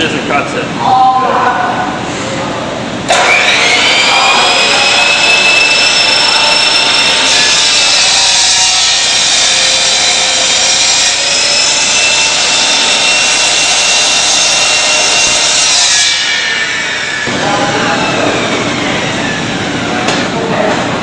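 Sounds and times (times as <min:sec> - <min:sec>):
chop saw cutting plastic rod: 0:03.1 - 0:16.9.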